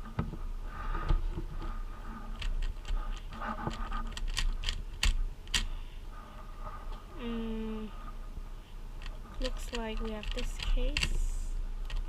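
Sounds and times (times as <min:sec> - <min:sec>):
speed cube clicking: 0:02.4 - 0:05.8, 0:09.0 - 0:12.0.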